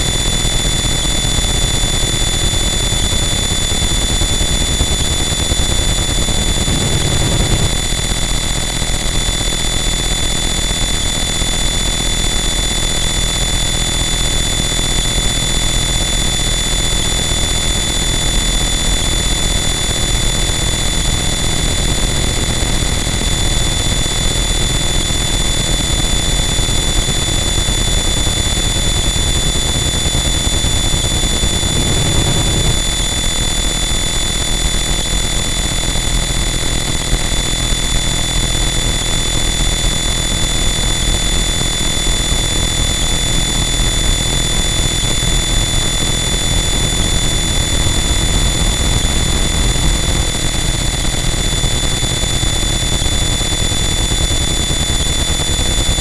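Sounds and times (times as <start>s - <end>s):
high whining tones: 30.4s - 33.3s
distorted static noise: 31.4s - 33.0s.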